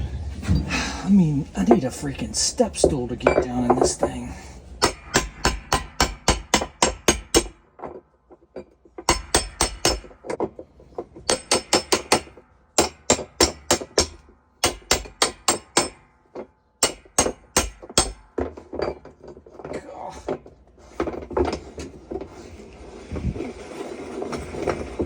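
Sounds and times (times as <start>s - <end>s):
hammer striking metal: 4.8s - 7.6s, 9.0s - 10.4s, 11.2s - 16.1s, 16.8s - 19.0s.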